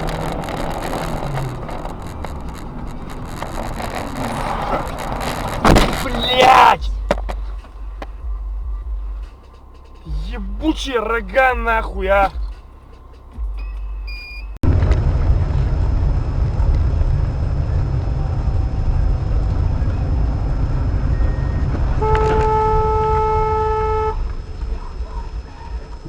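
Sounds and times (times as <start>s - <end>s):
engine and road rumble: 0.0s - 26.0s
car horn blast: 22.0s - 24.4s.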